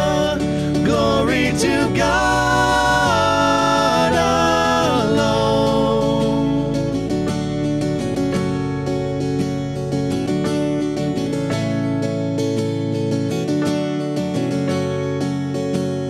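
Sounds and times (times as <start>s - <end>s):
voices holding sung notes: 0.0s - 7.0s
praise band playing: 0.0s - 7.9s.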